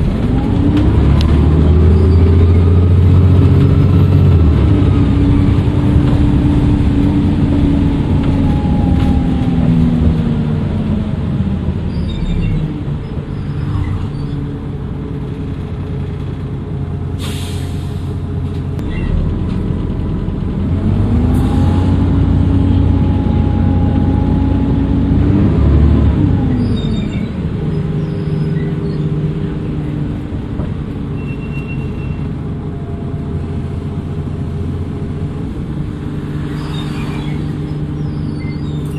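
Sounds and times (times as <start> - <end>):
bus engine: 0.0 - 38.9
air brakes hissing: 17.2 - 18.4.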